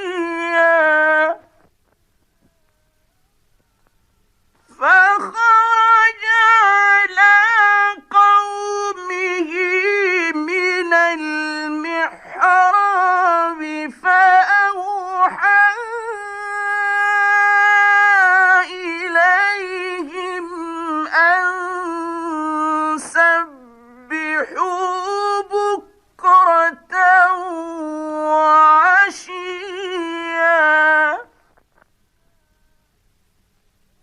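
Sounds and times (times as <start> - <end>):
man chanting melodically: 0.0 - 1.7, 4.5 - 31.5.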